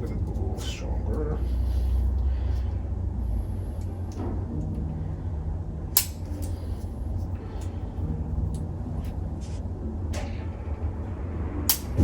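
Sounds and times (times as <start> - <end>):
steady low hum: 0.0 - 12.0
joint cracking: 5.9 - 7.8.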